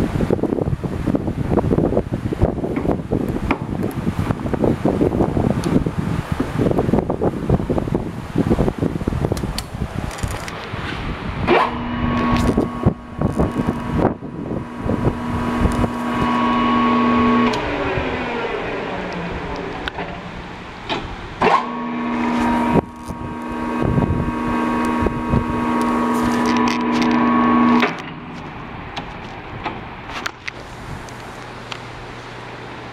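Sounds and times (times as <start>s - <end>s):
lathe gear whine: 11.4s - 20.7s, 21.4s - 28.4s.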